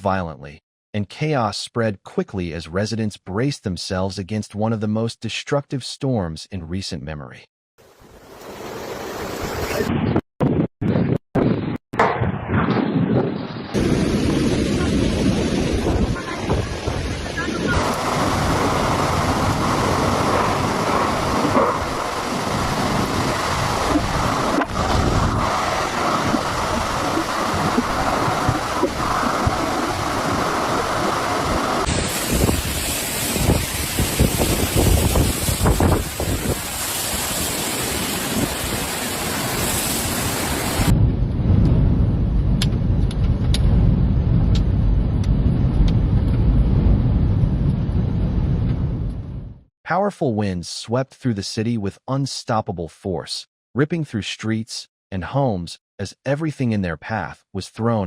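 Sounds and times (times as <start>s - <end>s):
storm wind buffeting microphone: 9.2s - 49.6s.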